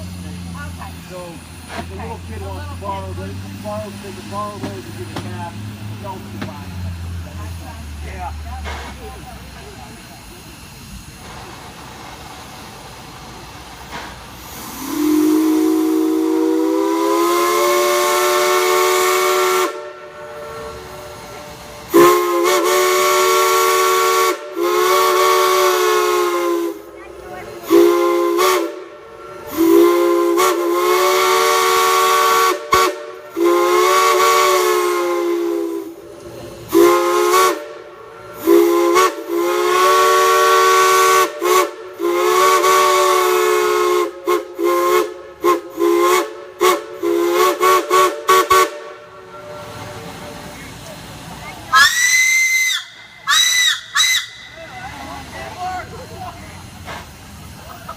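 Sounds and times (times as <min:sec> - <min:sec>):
steam hissing: 0:00.0 - 0:57.9
steam whistle blasts: 0:14.5 - 0:27.0, 0:27.6 - 0:36.0, 0:36.7 - 0:50.6, 0:51.7 - 0:54.6.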